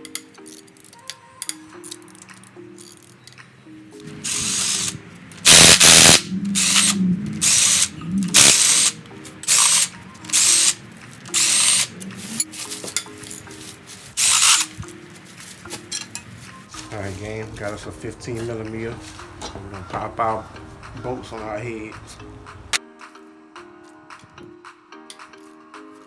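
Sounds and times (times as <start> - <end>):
background music: 0.0 - 26.0
power tool bursts: 4.2 - 11.9, 14.2 - 14.8.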